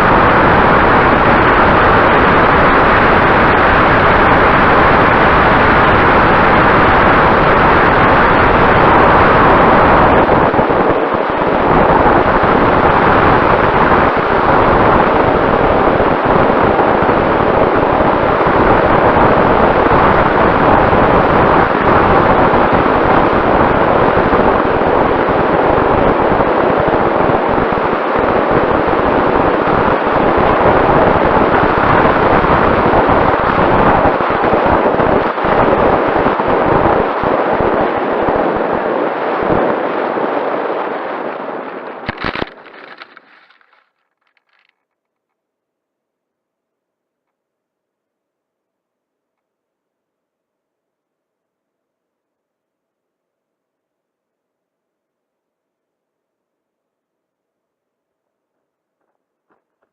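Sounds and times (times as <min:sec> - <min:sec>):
wind buffeting microphone: 0:00.0 - 0:43.8.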